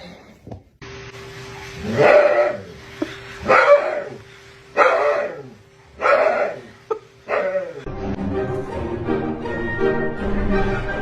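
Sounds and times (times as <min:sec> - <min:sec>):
dog barking: 0:03.5 - 0:04.1, 0:04.8 - 0:06.6.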